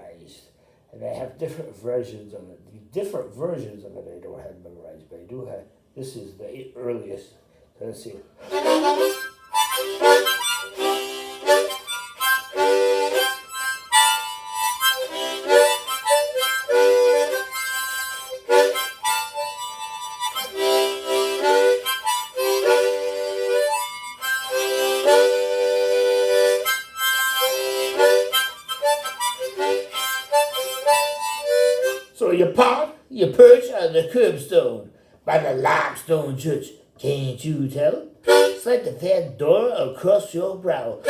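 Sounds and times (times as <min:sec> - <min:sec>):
harmonica chords: 0:08.4 - 0:34.5, 0:35.3 - 0:41.0.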